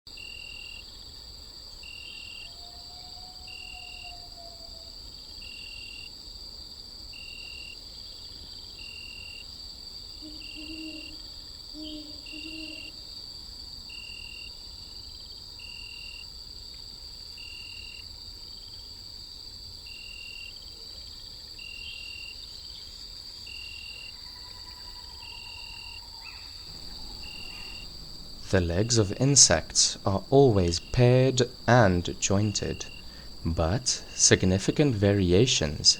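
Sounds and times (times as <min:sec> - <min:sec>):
insect chirp: 0:00.1 - 0:35.9
insects buzzing: 0:04.8 - 0:16.2, 0:21.6 - 0:35.9.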